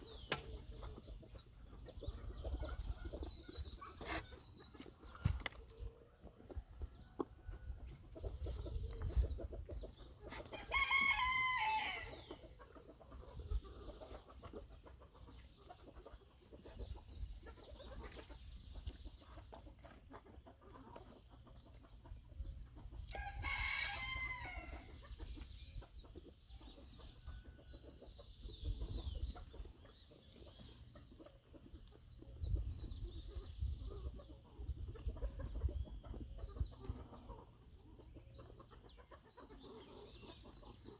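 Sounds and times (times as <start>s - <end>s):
small birds chirping: 0.0s - 40.9s
rooster crowing: 10.6s - 12.1s.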